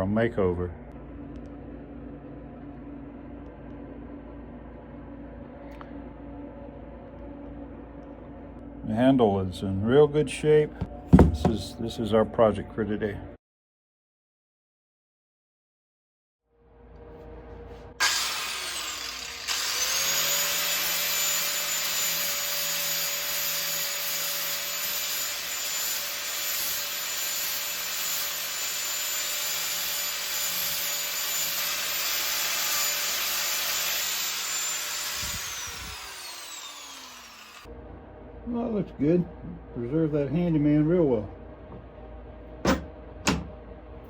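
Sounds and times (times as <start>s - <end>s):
power tool motor whine: 18.0s - 37.7s.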